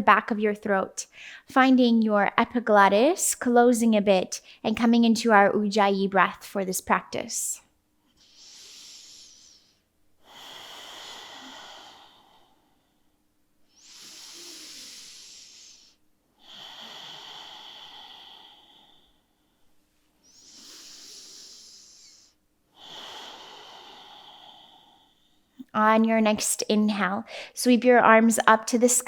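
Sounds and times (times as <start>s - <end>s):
slow throat breathing hiss: 8.1s - 13.0s, 13.7s - 25.5s.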